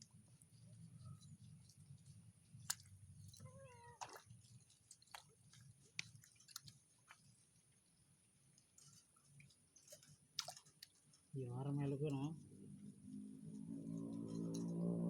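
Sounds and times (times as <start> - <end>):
cat meowing: 3.4 - 4.2.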